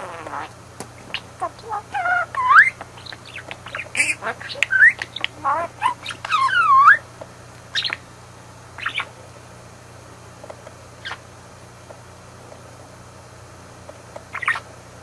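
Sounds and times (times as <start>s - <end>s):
budgerigar chirps: 1.1s - 7.0s, 7.7s - 8.0s, 8.8s - 9.1s, 11.0s - 11.2s, 14.3s - 14.7s
budgerigar squawk: 1.1s - 7.0s, 7.7s - 8.0s, 8.8s - 9.1s, 14.3s - 14.6s.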